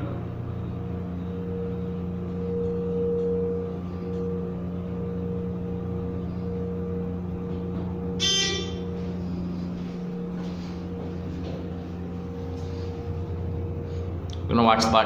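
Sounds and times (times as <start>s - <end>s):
elevator humming: 0.0s - 15.0s
electronic ding: 7.8s - 9.1s.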